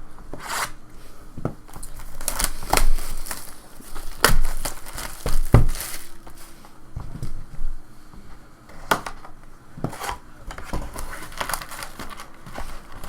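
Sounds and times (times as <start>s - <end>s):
plastic wrapping crinkling and ripping: 1.7s - 6.5s, 10.7s - 13.0s.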